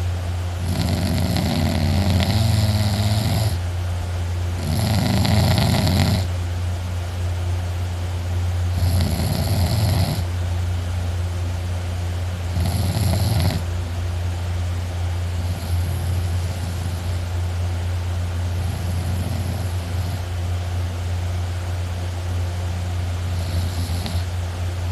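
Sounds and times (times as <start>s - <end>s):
steady low hum: 0.0s - 24.9s
person snoring loudly: 0.6s - 3.6s, 4.6s - 6.3s, 8.7s - 10.3s, 12.5s - 13.7s, 15.4s - 17.2s, 18.6s - 20.3s, 23.3s - 24.3s.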